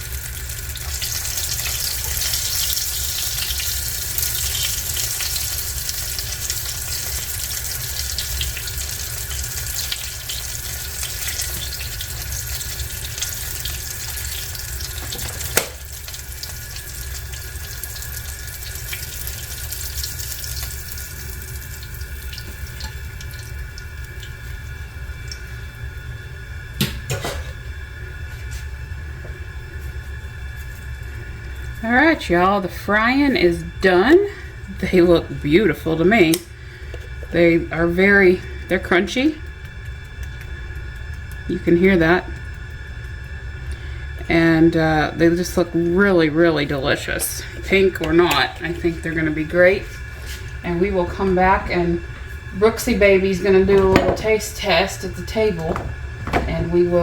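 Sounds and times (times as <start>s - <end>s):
food frying in oil: 0.0s - 57.0s.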